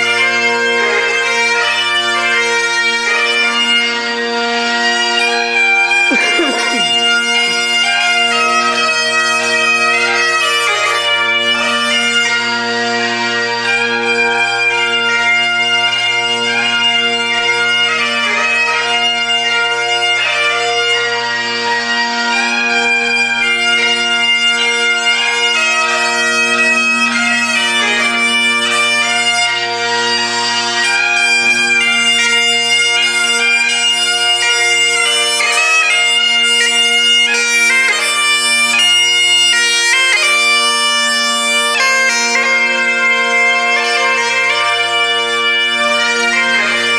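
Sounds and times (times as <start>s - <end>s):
bagpipes playing a tune: 0.0s - 46.9s.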